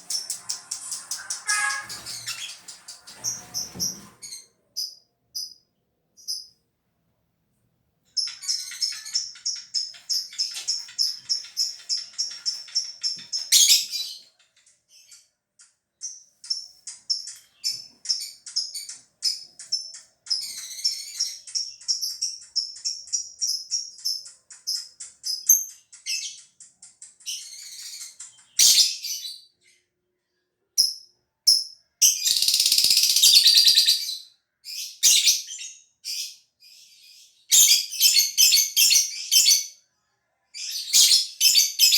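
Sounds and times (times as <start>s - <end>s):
bird shrill chirping: 0.0s - 5.5s, 32.0s - 34.2s.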